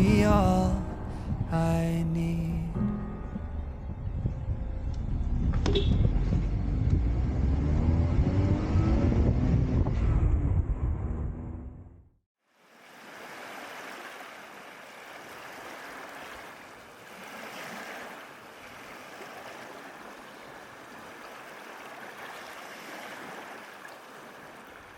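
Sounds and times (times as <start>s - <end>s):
flowing water rushing: 12.5s - 24.9s.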